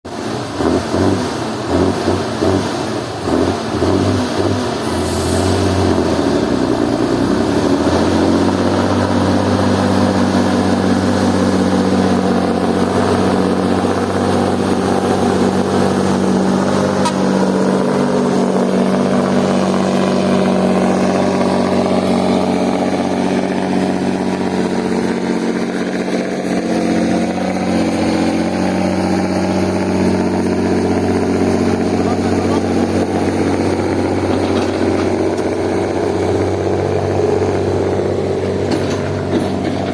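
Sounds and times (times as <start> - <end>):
truck diesel engine: 0.0 - 39.9
brief air hiss: 4.9 - 5.6.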